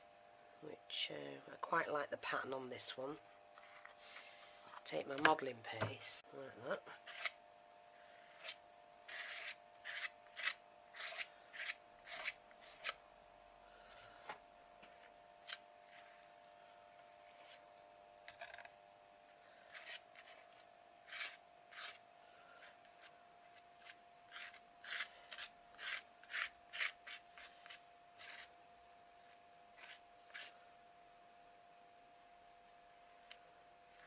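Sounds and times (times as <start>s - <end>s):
faint steady hum: 0.0s - 34.0s
paste scraping across stencil: 7.0s - 7.4s, 8.3s - 13.0s, 19.7s - 22.0s, 22.6s - 28.5s, 29.8s - 30.6s.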